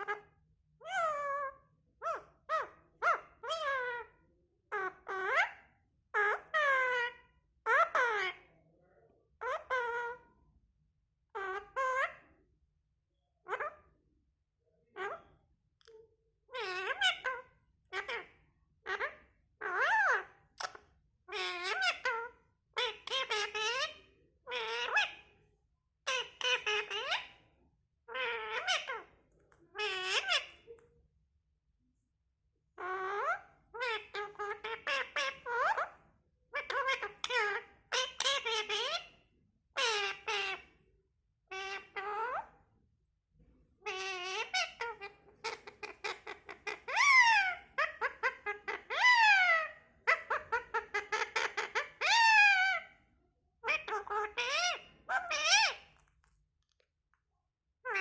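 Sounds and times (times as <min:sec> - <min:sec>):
parrot talking: 0:00.0 - 0:08.5, 0:09.4 - 0:10.3, 0:11.3 - 0:12.2, 0:13.4 - 0:13.9, 0:14.9 - 0:25.3, 0:26.0 - 0:27.4, 0:28.1 - 0:30.8, 0:32.8 - 0:39.2, 0:39.8 - 0:40.8, 0:41.5 - 0:42.7, 0:43.8 - 0:53.0, 0:53.6 - 0:56.1.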